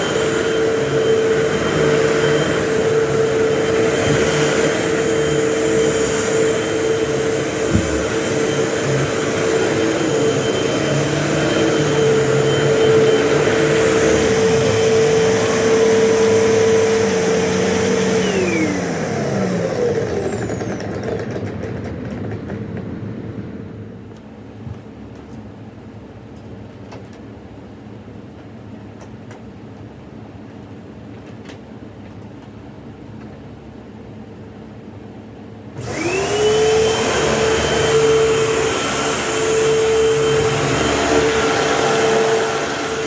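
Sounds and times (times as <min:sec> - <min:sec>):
vacuum cleaner motor whine: 0:00.0 - 0:22.6, 0:35.8 - 0:43.0.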